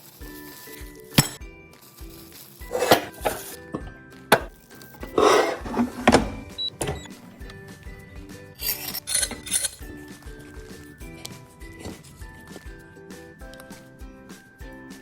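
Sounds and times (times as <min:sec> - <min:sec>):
background music: 0:00.0 - 0:15.0
short scraping noises: 0:02.7 - 0:03.6, 0:04.4 - 0:07.1.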